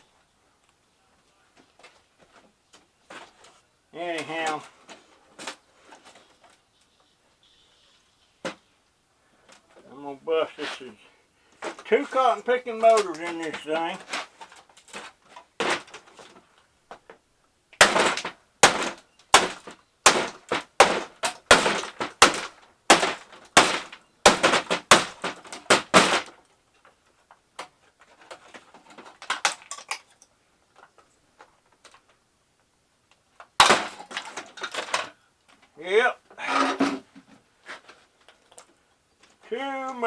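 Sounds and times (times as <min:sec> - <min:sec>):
hard blows on plastic housing: 0:11.6 - 0:17.1, 0:17.8 - 0:26.4, 0:33.4 - 0:35.1.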